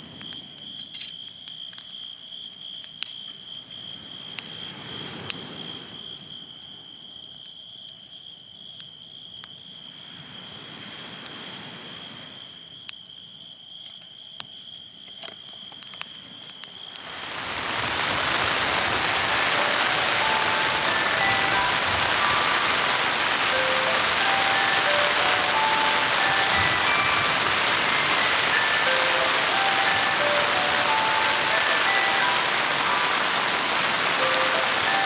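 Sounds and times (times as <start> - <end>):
heavy rain downpour: 17.0 - 35.0
soft wind: 17.0 - 35.0
high-pitched insect trill: 17.2 - 35.0
faint musical notes: 17.8 - 35.0.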